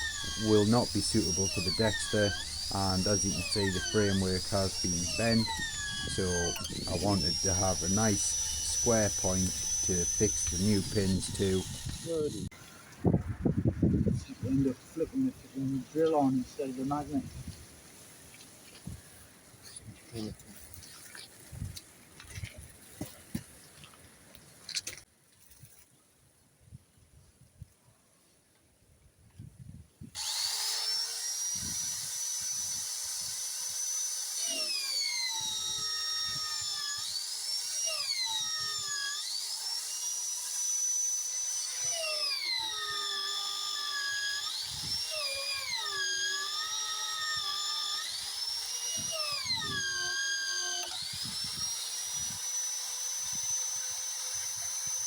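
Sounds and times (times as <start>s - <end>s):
magnetic drill motor whining: 0.0s - 12.5s, 30.1s - 55.0s.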